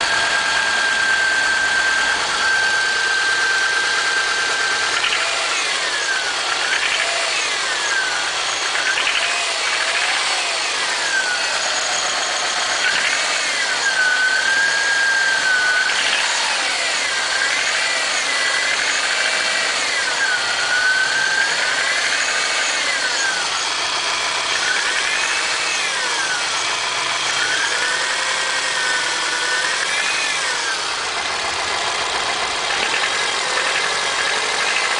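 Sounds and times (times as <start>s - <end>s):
car engine revving: 29.6s - 34.9s.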